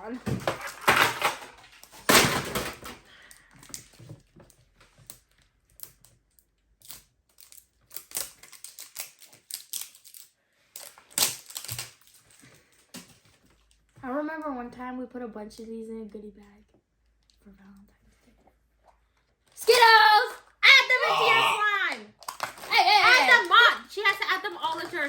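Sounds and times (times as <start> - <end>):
plastic wrapper crinkling: 6.8 - 13.9, 22.2 - 25.0
wrapper rustling bursts: 22.2 - 25.0.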